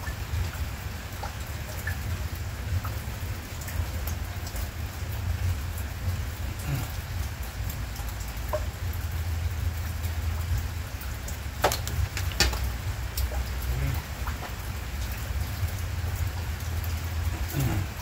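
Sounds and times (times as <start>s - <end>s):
heavy rain falling: 0.0s - 18.0s
sharp knocks: 11.6s - 12.7s.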